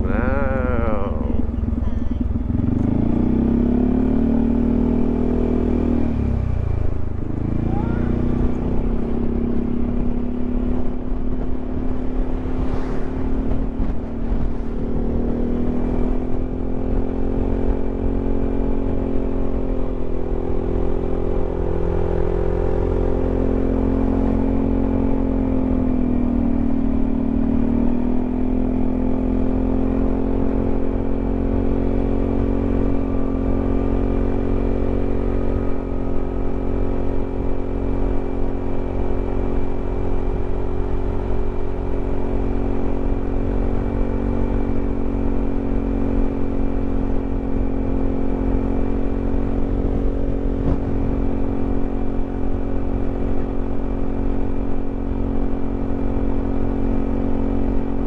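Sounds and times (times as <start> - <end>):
dense low rumble: 0.0 - 12.9, 49.5 - 52.7
scooter engine cruising: 0.0 - 58.0.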